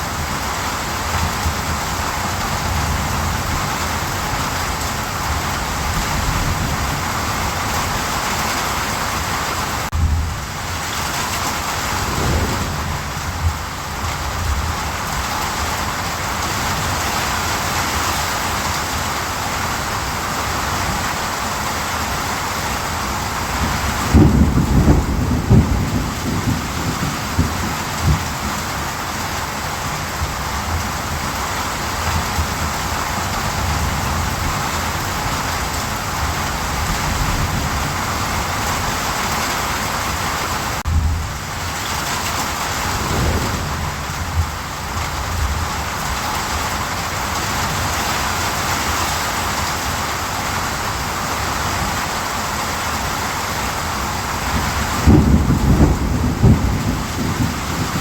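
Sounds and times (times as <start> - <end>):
heavy rainfall: 0.0 - 58.0
thunder rumbling: 10.0 - 15.6, 23.9 - 28.6, 42.4 - 46.2, 54.5 - 58.0.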